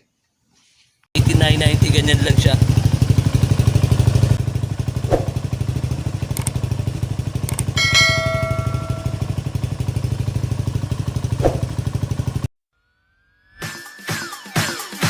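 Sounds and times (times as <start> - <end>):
motorcycle idling: 1.2 - 12.5.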